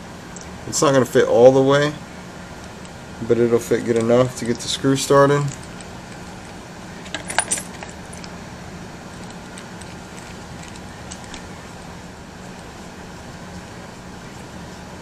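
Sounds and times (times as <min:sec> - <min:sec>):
steady low hum: 0:00.0 - 0:15.0
small parts clicking and clinking: 0:07.0 - 0:08.3.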